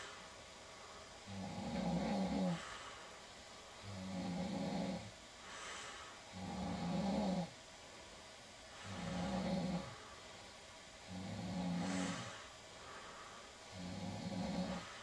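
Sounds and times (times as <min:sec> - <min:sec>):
woman snoring: 0:01.2 - 0:02.8, 0:03.8 - 0:05.1, 0:06.3 - 0:07.5, 0:08.8 - 0:10.0, 0:11.0 - 0:12.5, 0:13.7 - 0:15.0
hissing breath out: 0:11.7 - 0:13.6.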